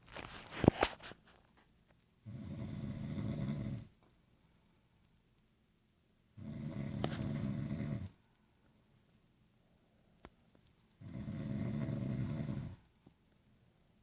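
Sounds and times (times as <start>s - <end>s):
person snoring: 2.2s - 3.9s, 6.4s - 8.2s, 11.0s - 12.8s
quiet breathing: 2.2s - 5.1s, 6.2s - 14.0s.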